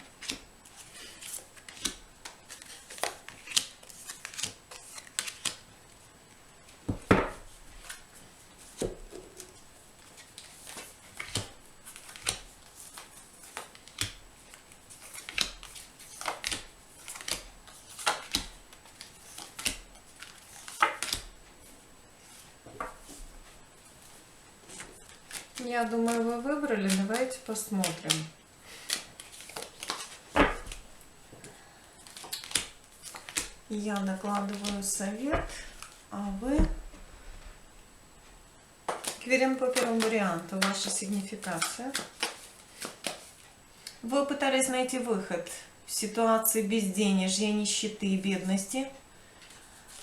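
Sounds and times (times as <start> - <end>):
cards shuffling: 0.1 - 5.6, 8.6 - 21.3, 24.8 - 30.9, 32.0 - 36.0, 38.9 - 44.0.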